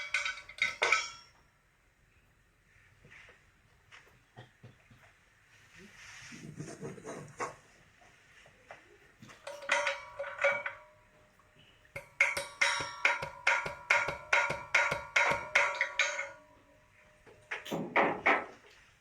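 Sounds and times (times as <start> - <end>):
metal clicking and clinking: 0.0 - 1.4, 9.4 - 11.0, 12.0 - 16.6.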